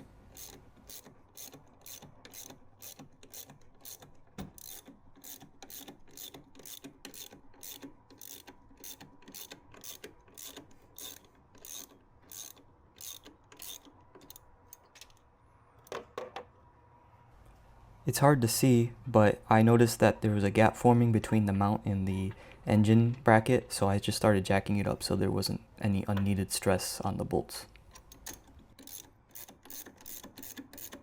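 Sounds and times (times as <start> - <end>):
ratchet wrench clicking: 0.3 - 15.2, 27.9 - 31.0.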